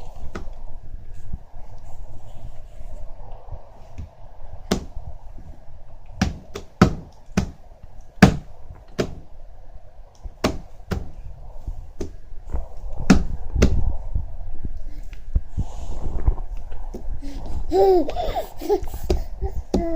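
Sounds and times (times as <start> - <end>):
hand slapping a table top: 6.2 - 7.6.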